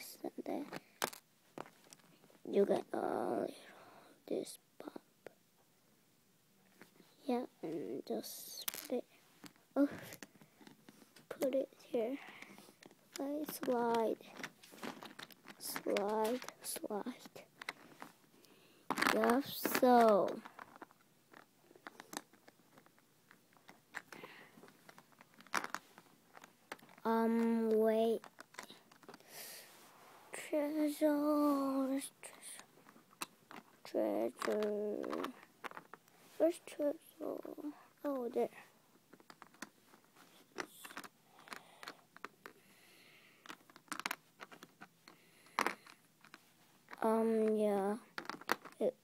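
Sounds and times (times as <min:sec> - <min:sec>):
plastic toy bricks clicking: 0:18.9 - 0:29.2, 0:32.4 - 0:36.0, 0:39.1 - 0:39.7, 0:40.5 - 0:42.6, 0:43.4 - 0:48.9.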